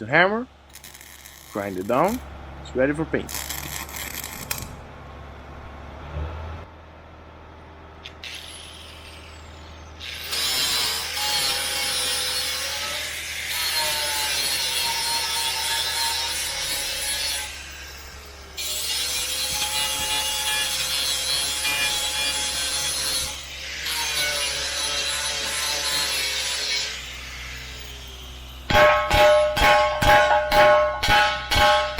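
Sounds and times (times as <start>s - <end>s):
angle grinder grinding steel: 0.7s - 2.3s, 3.2s - 4.8s, 8.1s - 29.6s.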